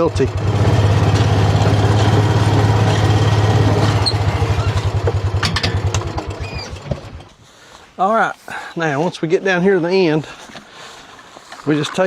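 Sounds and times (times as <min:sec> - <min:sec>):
small vehicle engine running: 0:00.0 - 0:07.3.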